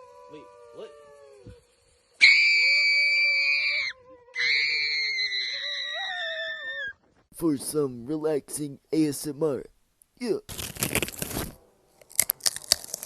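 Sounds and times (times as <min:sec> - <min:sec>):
high-pitched screams: 0:02.2 - 0:07.0.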